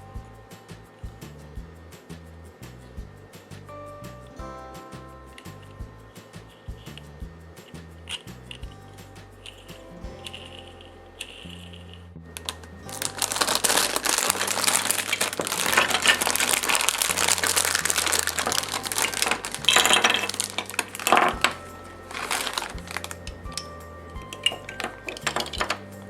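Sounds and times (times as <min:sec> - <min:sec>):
plastic packaging crinkling: 0:12.4 - 0:26.0.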